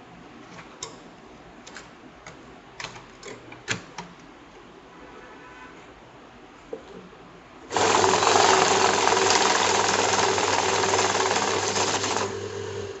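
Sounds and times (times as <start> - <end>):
banknote counting machine: 7.7 - 12.9.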